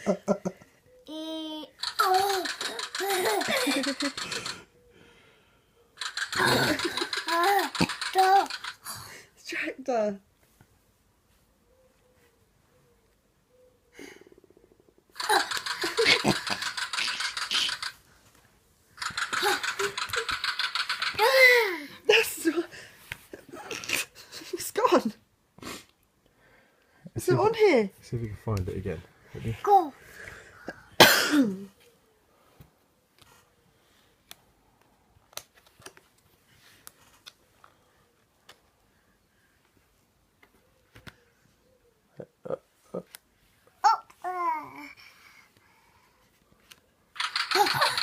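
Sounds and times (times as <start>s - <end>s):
rapid rattling clatter: 1.8s - 4.6s, 6.0s - 8.9s, 15.2s - 18.0s, 19.0s - 21.4s, 47.2s - 48.0s.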